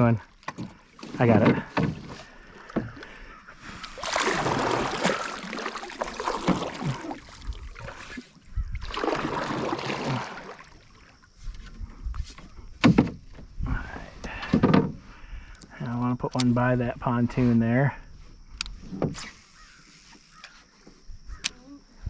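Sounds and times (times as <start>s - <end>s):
paddle sloshing through water: 0.3s - 12.6s
low knocks against hull: 12.7s - 13.7s.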